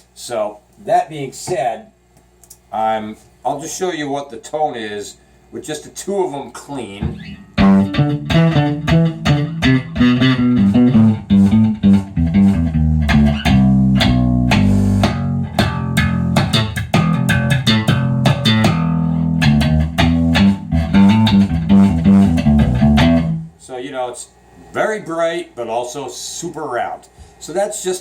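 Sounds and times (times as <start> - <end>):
electric bass guitar plucked: 6.9 - 23.6.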